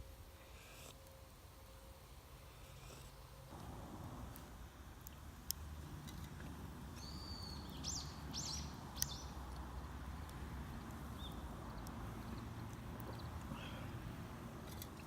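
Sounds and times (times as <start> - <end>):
bird whistling calls: 7.0 - 9.3.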